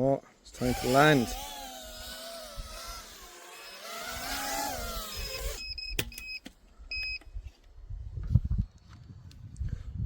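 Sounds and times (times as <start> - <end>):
drone motors whining: 0.5 - 5.8
short high beeps: 5.6 - 7.2.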